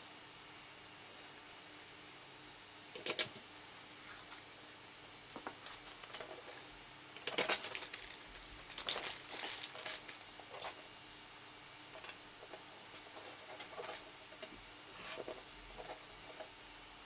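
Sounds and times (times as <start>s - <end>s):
plastic items crinkling: 7.2s - 10.8s.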